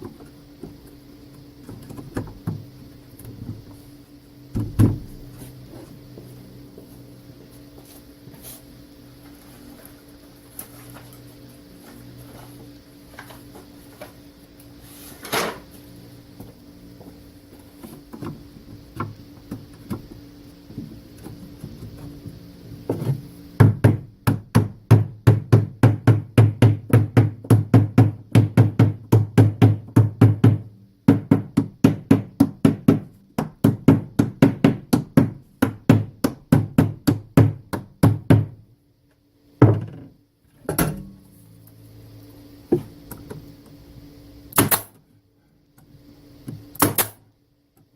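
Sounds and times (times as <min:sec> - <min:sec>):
sharp knocks on wooden frame: 0:04.5 - 0:05.1, 0:23.6 - 0:38.6.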